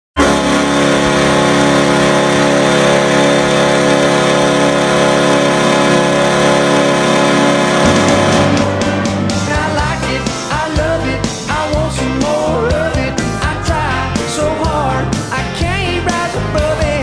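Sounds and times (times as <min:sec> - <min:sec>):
goal horn blast: 0:00.2 - 0:15.2
music with a beat: 0:07.8 - 0:17.0.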